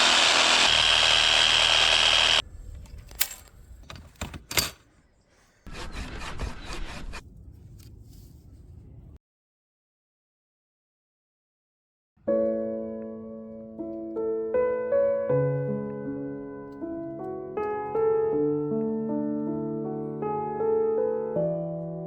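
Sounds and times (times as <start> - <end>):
power saw running: 0.0 - 2.4
rasping cutting: 0.0 - 2.4
pruning shears clicking: 1.3 - 3.6.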